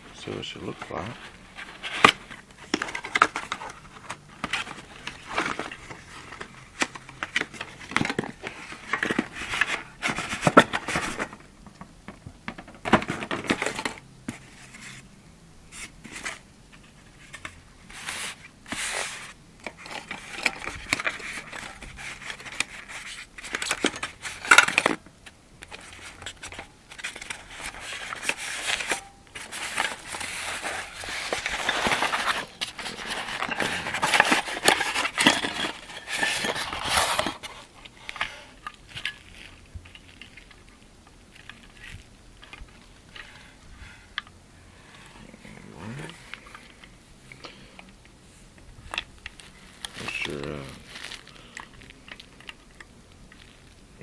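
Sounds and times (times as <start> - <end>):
packaging crinkling: 0.8 - 11.9, 17.2 - 48.0, 48.6 - 54.0
packaging tearing: 49.1 - 53.7.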